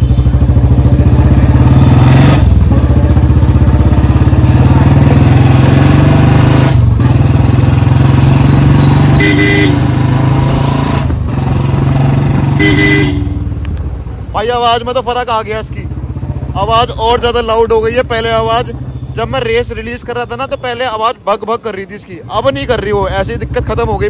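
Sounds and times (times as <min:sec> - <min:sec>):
motorcycle engine running: 0:00.0 - 0:20.4, 0:22.3 - 0:24.0
horn beep: 0:08.7 - 0:09.9, 0:12.6 - 0:13.5.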